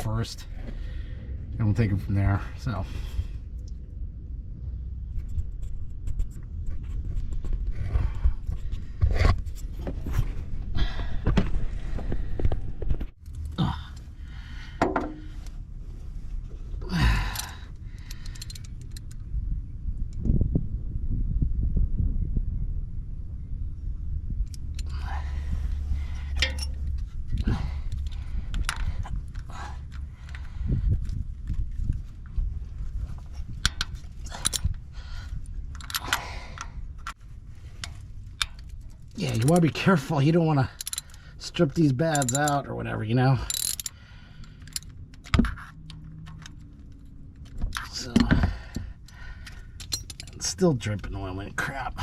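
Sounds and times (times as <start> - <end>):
low handling rumble: 0.0 - 52.0
man sighing: 13.6 - 14.0, 16.8 - 17.6
wrench metallic clicks: 40.7 - 42.7, 43.4 - 46.7.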